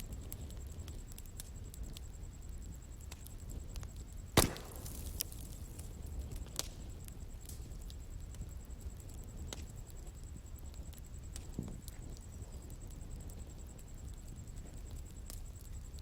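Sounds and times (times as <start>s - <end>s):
bonfire crackling: 0.0s - 16.0s
wood snapping and popping: 4.4s - 5.9s.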